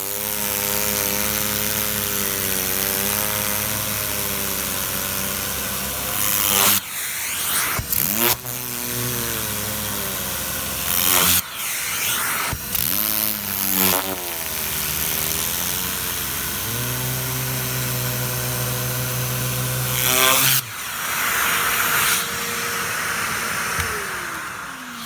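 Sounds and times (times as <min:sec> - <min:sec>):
motor winding down: 0:00.2 - 0:25.0
compressed air hiss: 0:00.5 - 0:25.0
motor hum: 0:12.5 - 0:25.0.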